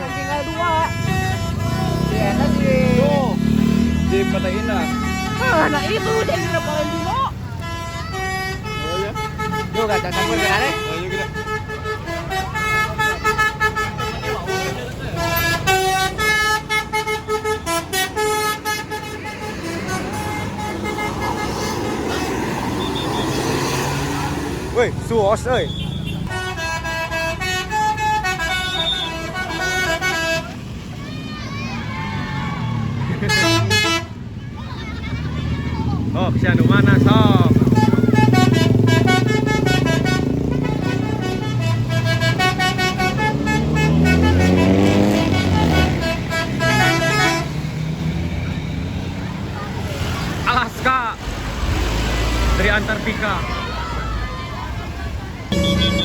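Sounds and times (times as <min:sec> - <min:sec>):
bus horn playing a tune: 0:00.0 - 0:24.0, 0:25.7 - 0:30.8, 0:33.1 - 0:34.3, 0:36.6 - 0:48.4, 0:55.5 - 0:56.0
bus engine and road noise: 0:00.0 - 0:56.0.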